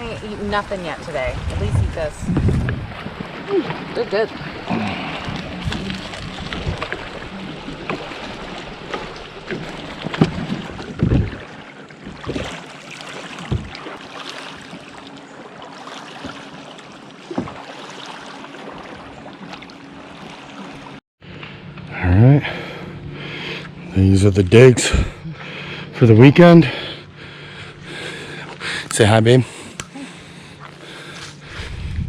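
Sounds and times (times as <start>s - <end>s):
paddle strokes splashing: 0.0s - 21.6s
water: 0.0s - 32.0s
wind noise on microphone: 1.2s - 3.4s, 5.3s - 7.2s, 10.3s - 11.4s, 31.4s - 32.0s.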